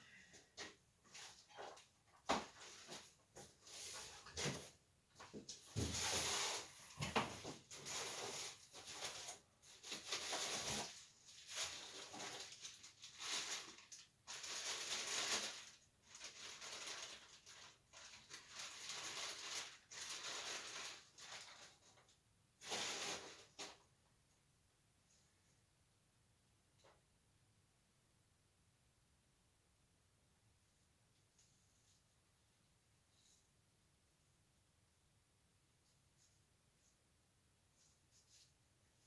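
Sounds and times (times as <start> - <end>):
packaging rustling and crinkling: 5.7 - 23.8.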